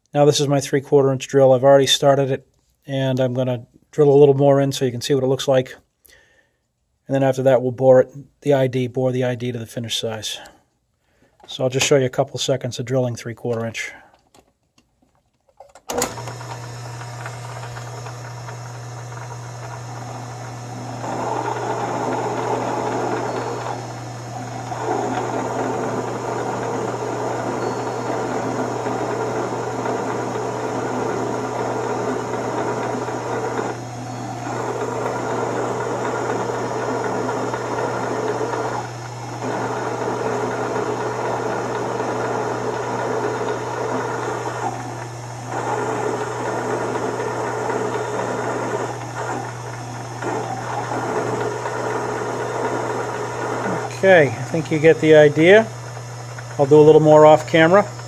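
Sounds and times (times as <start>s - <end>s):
drill cutting into iron: 15.9s - 58.0s
machine motor humming: 15.9s - 58.0s.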